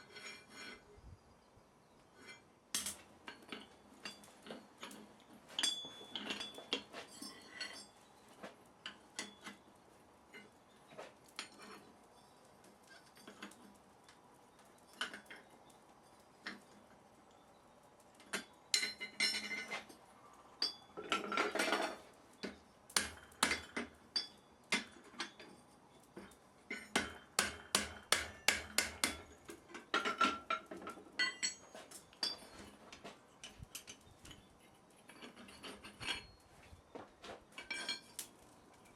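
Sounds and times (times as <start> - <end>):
scraping metal: 0.0 - 1.0, 26.7 - 36.5
hammer striking metal anvil: 27.0 - 29.3.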